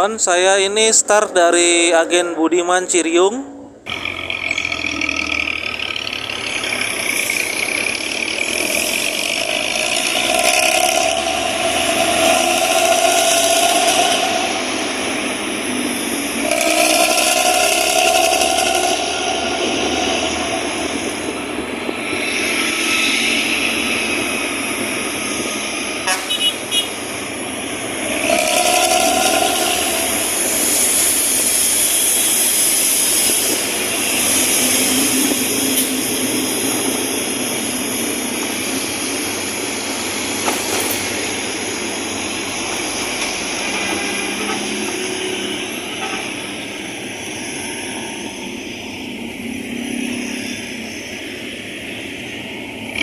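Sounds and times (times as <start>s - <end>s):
road and traffic noise: 0.0s - 53.0s
bus with snoring exhaust: 3.4s - 53.0s
vehicle horn: 26.0s - 27.1s.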